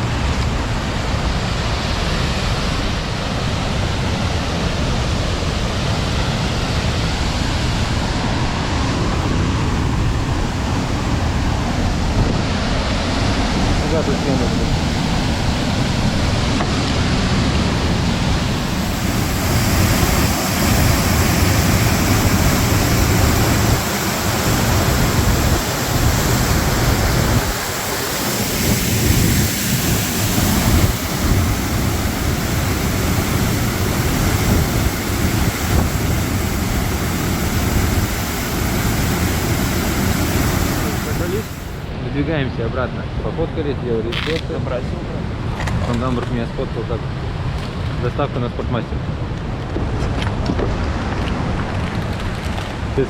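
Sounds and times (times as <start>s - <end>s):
waterfall rushing: 0.0s - 42.0s.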